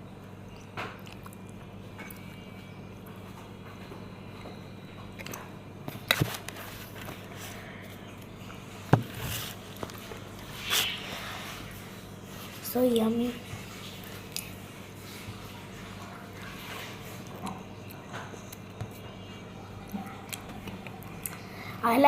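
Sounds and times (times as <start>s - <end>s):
steady low hum: 0.0s - 22.0s
person chewing food: 0.5s - 2.4s.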